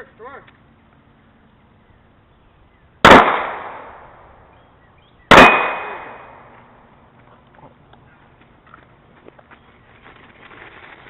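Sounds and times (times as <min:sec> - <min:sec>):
handgun shots echoing: 0:03.0 - 0:04.2, 0:05.3 - 0:06.6.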